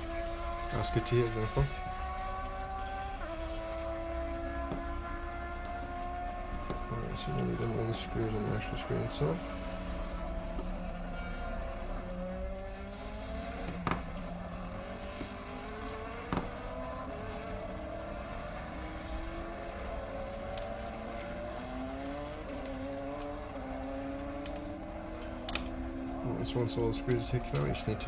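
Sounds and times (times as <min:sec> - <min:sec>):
race car engine accelerating: 0:00.0 - 0:28.0
sharp clicks: 0:24.4 - 0:25.9.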